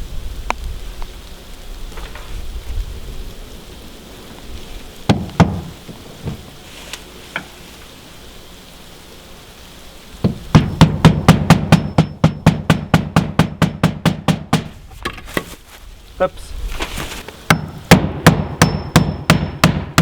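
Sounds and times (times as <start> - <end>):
hammer striking nails: 5.1 - 5.7, 10.2 - 14.7, 17.5 - 20.0.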